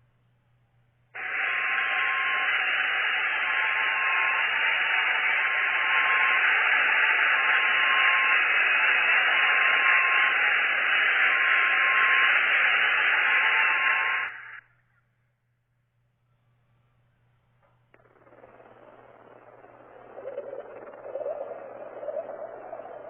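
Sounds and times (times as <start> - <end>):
loud static hiss: 1.2 - 14.6
low hum: 14.9 - 23.0
faint pulsing tone: 16.3 - 23.0.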